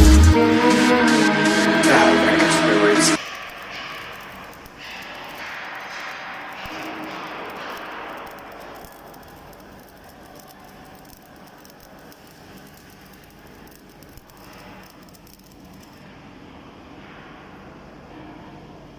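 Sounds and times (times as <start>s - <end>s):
welding arc crackling: 3.1s - 16.3s.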